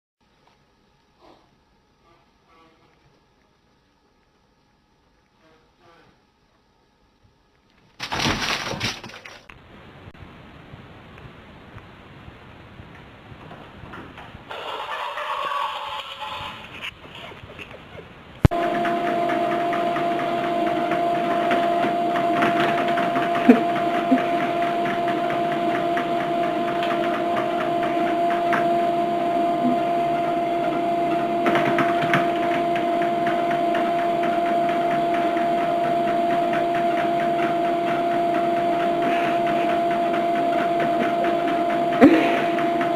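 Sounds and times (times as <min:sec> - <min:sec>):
steady machine hum: 0:18.1 - 0:42.9.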